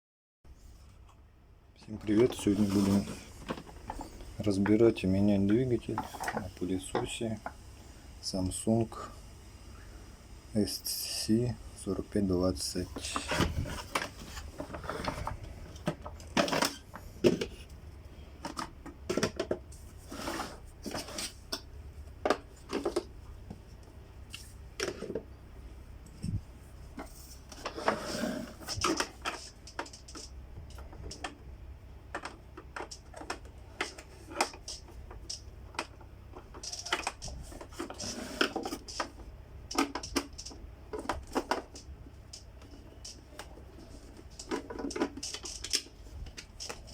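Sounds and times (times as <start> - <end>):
plastic parts clicking and rattling: 5.7 - 7.5, 13.0 - 17.7, 18.4 - 19.9, 20.8 - 23.2, 28.5 - 31.4, 32.1 - 46.9.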